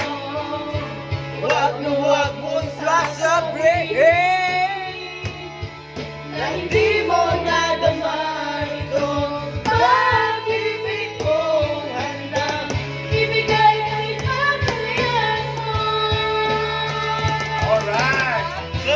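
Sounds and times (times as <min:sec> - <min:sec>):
song with singing over beat: 0:00.0 - 0:18.9.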